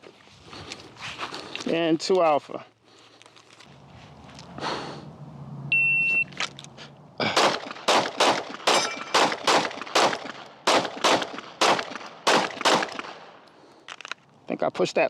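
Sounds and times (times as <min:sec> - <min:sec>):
shot timer beep: 0:05.7 - 0:06.3
rapid pistol shots: 0:07.3 - 0:13.4
steel target ringing: 0:08.7 - 0:09.3.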